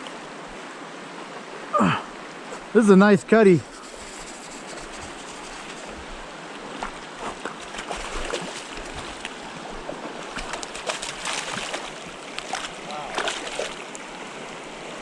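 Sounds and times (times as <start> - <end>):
stream running over rocks: 0.0 - 15.0
short clicks and splashes: 10.4 - 14.0.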